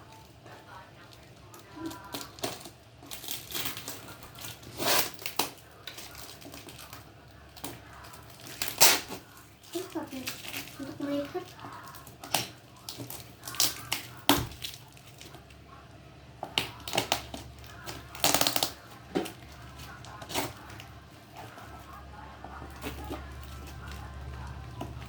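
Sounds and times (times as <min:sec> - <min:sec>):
packaging crackling and snapping: 0:00.0 - 0:15.6, 0:16.4 - 0:25.0
packaging tearing or crumpling: 0:01.0 - 0:15.6, 0:16.6 - 0:22.0.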